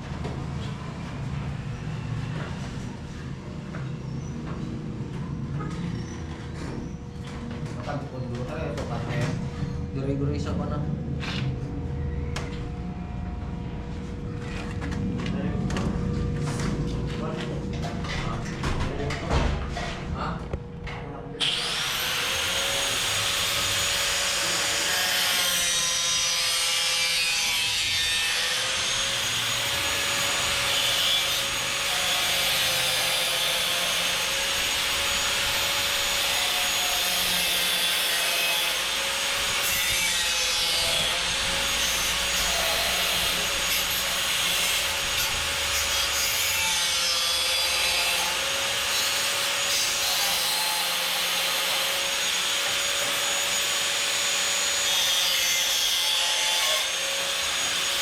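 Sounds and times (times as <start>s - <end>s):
angle grinder on steel: 21.4s - 58.0s.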